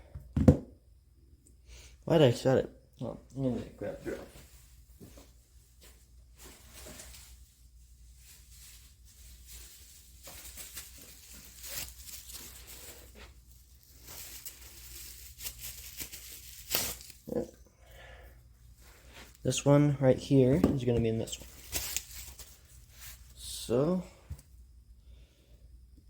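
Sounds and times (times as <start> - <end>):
rustling and scraping of objects: 3.5 - 17.6, 18.6 - 24.5.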